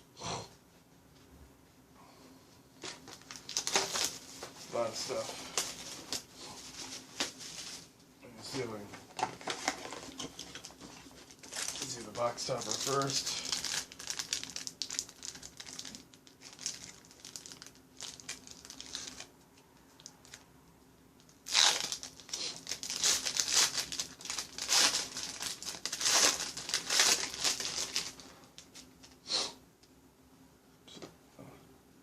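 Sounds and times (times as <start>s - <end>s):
plastic wrapping tearing and crinkling: 2.8s - 7.8s, 9.1s - 19.3s, 21.2s - 29.2s.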